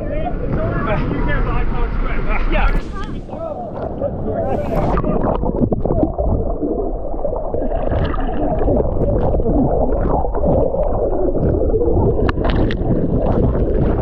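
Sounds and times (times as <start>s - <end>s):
underwater rush of churned water: 0.0s - 14.0s.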